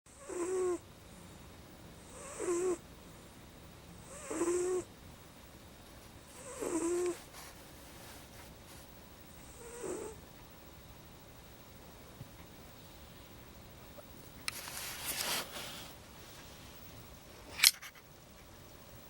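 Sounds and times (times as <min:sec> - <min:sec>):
pet snoring: 0:00.1 - 0:00.8, 0:02.1 - 0:02.8, 0:04.0 - 0:04.9, 0:06.3 - 0:07.6, 0:09.4 - 0:10.2.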